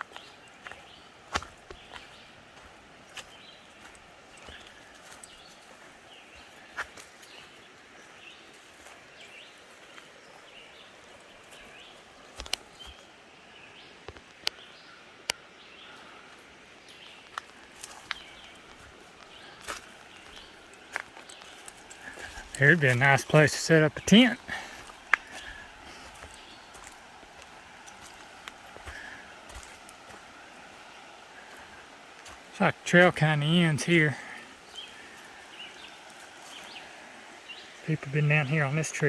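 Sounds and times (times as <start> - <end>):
footsteps on forest floor: 0.0 - 13.1, 15.9 - 39.0
birds calling faintly: 0.0 - 39.0
twigs snapping underfoot: 0.1 - 2.0, 12.3 - 13.0, 17.0 - 22.6, 24.8 - 30.3.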